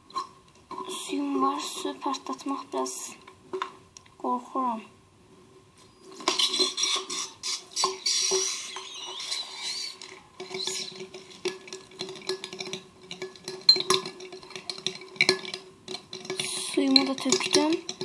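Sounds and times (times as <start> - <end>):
clinks and knocks against bowl: 9.9 - 18.0.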